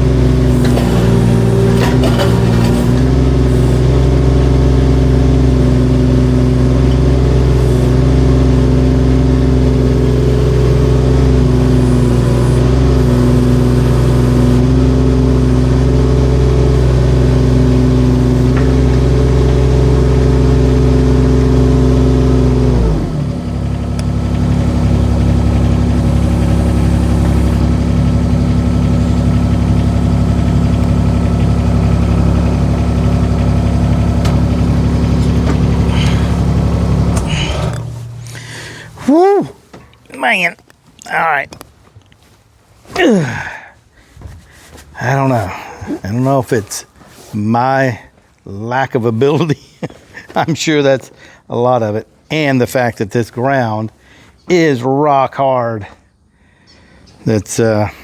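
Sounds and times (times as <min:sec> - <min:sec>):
digging machine engine running: 0:00.0 - 0:41.5, 0:43.0 - 0:47.3
bucket digging into hard soil: 0:00.4 - 0:03.8.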